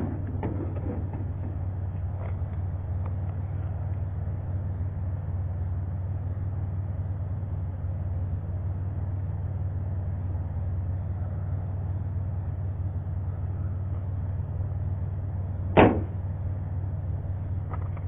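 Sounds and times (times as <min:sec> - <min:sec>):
sharp knock: 0:15.8 - 0:16.1.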